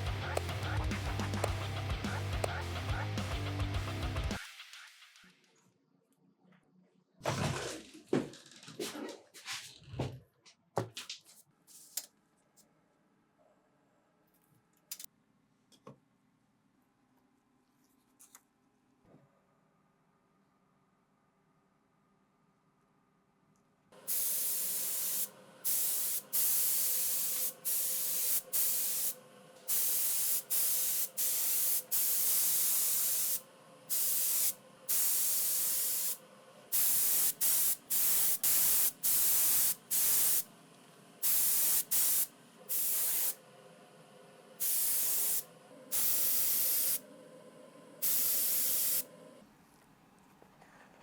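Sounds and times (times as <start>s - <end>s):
paint spray hissing: 24.0s - 40.5s, 41.2s - 43.4s, 44.6s - 47.0s, 48.0s - 49.1s.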